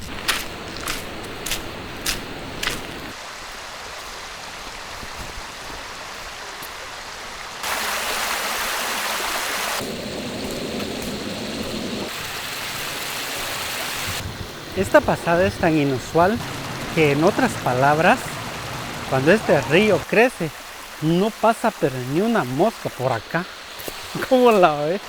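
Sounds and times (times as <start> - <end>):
river splashing over rocks: 12.1 - 25.0.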